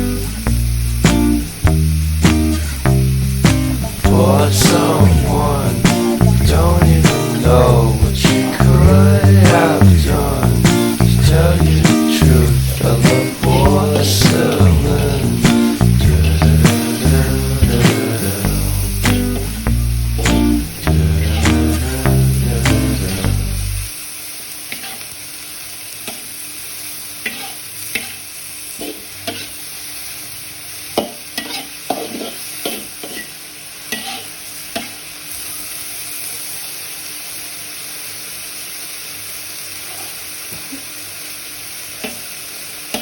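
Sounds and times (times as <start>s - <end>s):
food sizzling in a pan: 0.0s - 43.0s
spatula scraping a pan: 28.8s - 29.6s, 31.4s - 34.4s.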